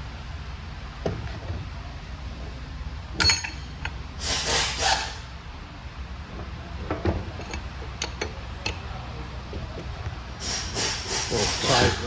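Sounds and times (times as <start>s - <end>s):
sharp metallic clank: 3.2s - 5.1s.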